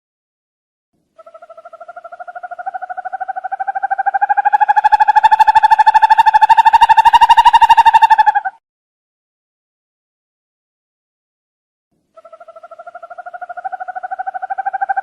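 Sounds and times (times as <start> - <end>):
owl trilling: 1.2 - 8.6, 12.2 - 15.0.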